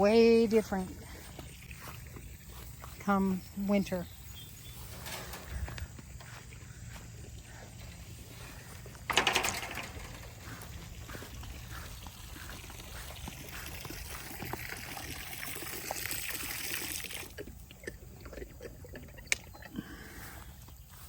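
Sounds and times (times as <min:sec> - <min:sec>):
water pouring into a container: 0:12.8 - 0:17.3.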